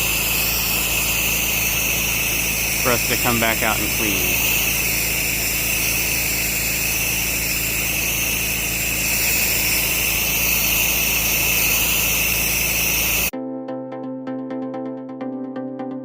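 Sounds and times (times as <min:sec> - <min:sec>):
pressure washer water jet hissing: 0:00.0 - 0:13.3
electronic music: 0:01.6 - 0:04.8, 0:13.3 - 0:16.0.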